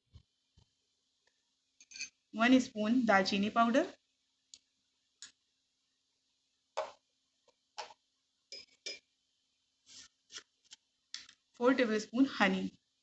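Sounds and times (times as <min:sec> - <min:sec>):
spoon tapping against bowl: 0:08.5 - 0:09.1.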